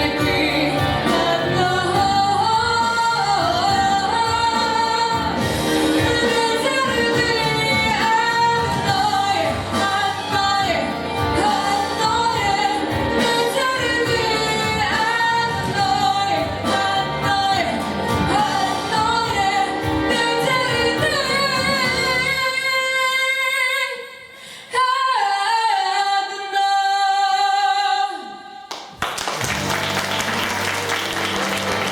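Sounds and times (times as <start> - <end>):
instrumental backing track: 0.0 - 22.5, 29.3 - 31.9
girl singing pop song: 0.0 - 28.4
audience applause: 28.7 - 31.9.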